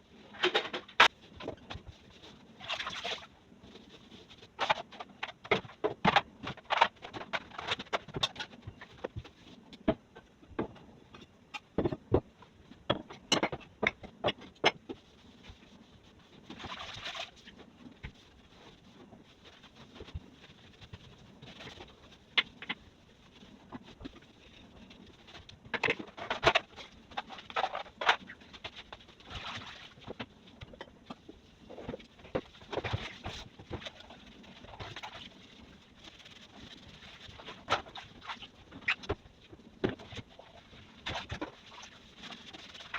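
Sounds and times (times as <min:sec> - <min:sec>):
objects knocking and clattering: 0:00.3 - 0:01.9, 0:04.6 - 0:15.0
rubbing sound: 0:14.9 - 0:42.9
household items clicking and clattering: 0:18.8 - 0:42.9.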